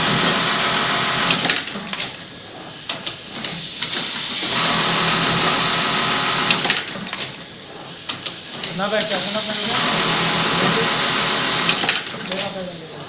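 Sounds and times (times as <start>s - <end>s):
sewing machine running: 0.0s - 1.7s, 4.4s - 6.9s, 9.2s - 12.6s.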